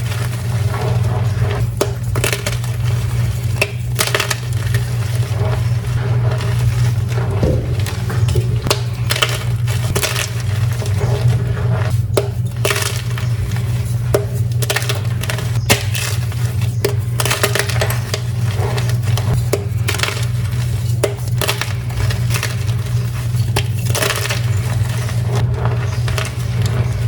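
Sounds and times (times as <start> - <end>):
steady low hum: 5.2 - 15.7.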